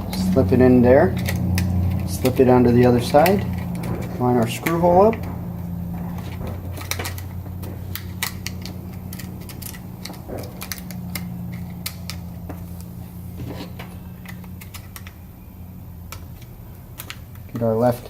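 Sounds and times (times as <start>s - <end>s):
steady low hum: 0.0s - 18.0s
plastic parts clicking and tapping: 6.2s - 15.2s, 16.1s - 17.7s.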